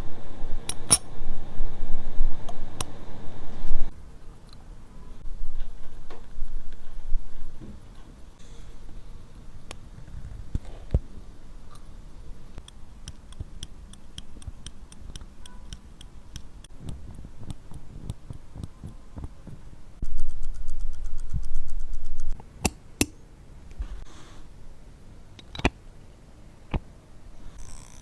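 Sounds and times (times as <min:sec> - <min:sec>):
sharp clicks: 0:12.6 - 0:18.4
watch mechanism ticking: 0:12.6 - 0:19.0.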